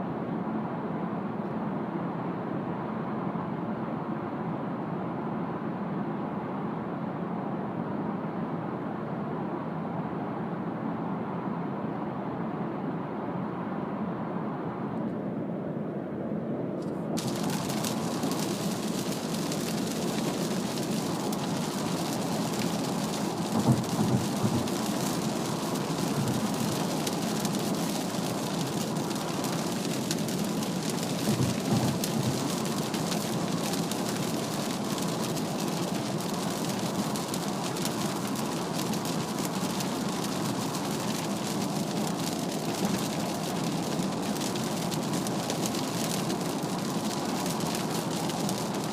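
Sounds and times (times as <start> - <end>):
low road rumble: 16.5 - 48.9
rain and tyre spray hissing: 17.2 - 48.9.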